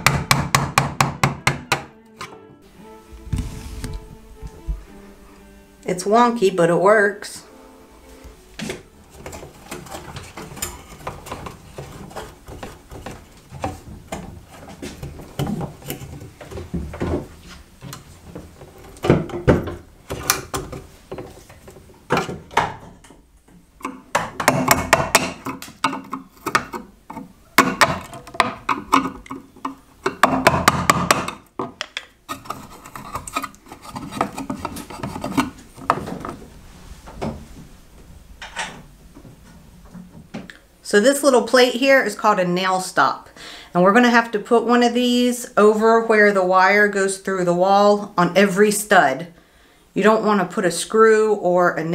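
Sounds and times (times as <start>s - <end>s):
knocks on wooden framing: 0.0s - 1.9s, 23.9s - 26.8s, 27.6s - 29.4s, 30.1s - 31.9s
hand rubbing on wood: 3.0s - 5.2s.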